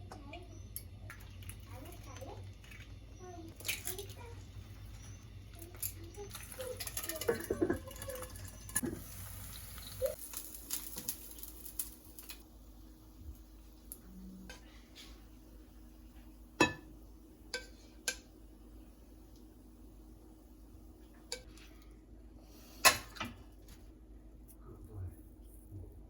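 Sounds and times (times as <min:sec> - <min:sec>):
dishes and utensils clinking: 0:04.9 - 0:09.0, 0:16.6 - 0:16.9.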